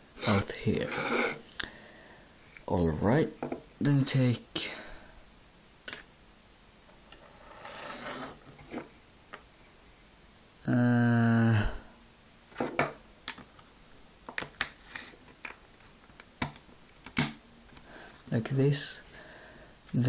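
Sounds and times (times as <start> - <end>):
person humming: 10.6 - 11.9.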